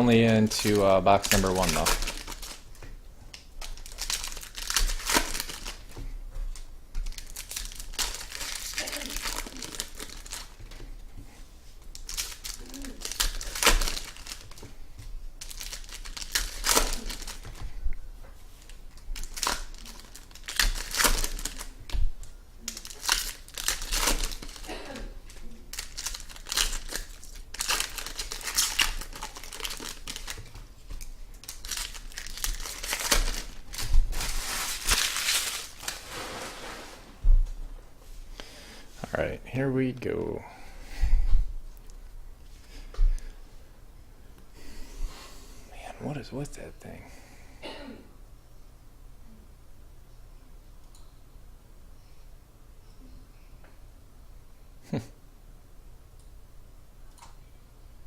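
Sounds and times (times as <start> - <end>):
foil wrappers tearing and crinkling: 0.0 - 2.7, 3.6 - 10.8, 11.9 - 14.7, 15.4 - 17.6, 18.6 - 22.0, 22.6 - 37.0
handling cards: 0.0 - 10.9, 11.8 - 17.7, 25.3 - 36.1.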